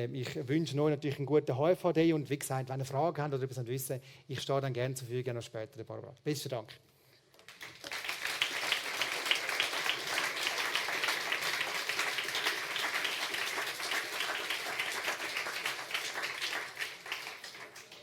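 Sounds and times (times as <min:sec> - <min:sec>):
audience applauding: 0:07.5 - 0:18.0.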